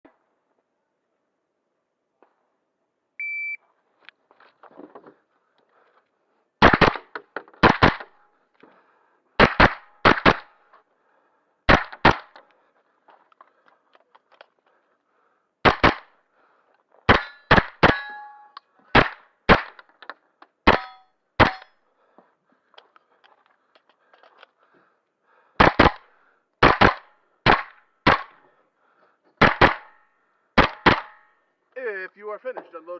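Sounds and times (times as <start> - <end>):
shot timer beep: 3.2 - 3.6
carbine gunshots: 6.6 - 8.2, 9.4 - 10.6, 15.6 - 16.1, 25.6 - 28.4, 29.4 - 30.0, 30.6 - 31.2
steel targets ringing: 17.1 - 18.6, 20.7 - 21.7.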